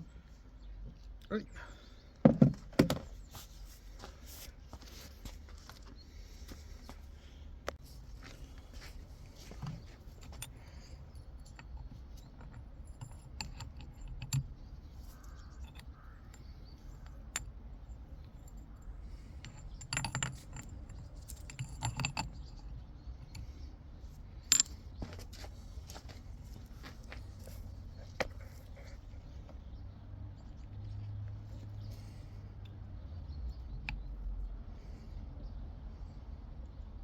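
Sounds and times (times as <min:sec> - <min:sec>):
metal parts clinking: 0:08.8 - 0:23.5, 0:24.4 - 0:25.4.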